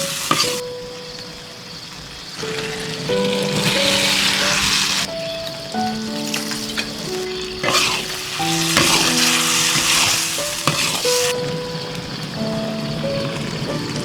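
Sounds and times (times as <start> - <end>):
background music: 0.0 - 14.0
food sizzling in a pan: 0.0 - 14.0.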